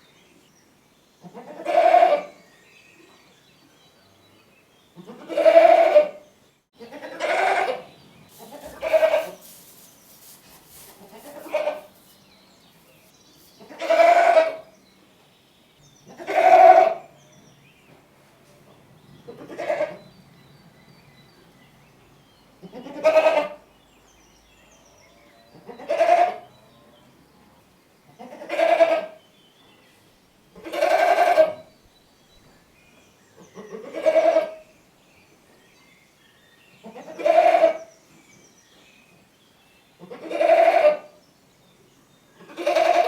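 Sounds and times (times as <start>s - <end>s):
goats bleating: 5.1s - 6.1s, 6.9s - 7.8s, 8.4s - 9.4s, 13.7s - 14.6s.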